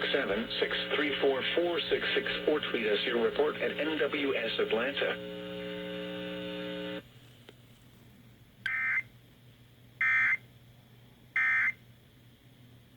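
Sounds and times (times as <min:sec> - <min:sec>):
steady buzzing tone: 0:00.0 - 0:07.0.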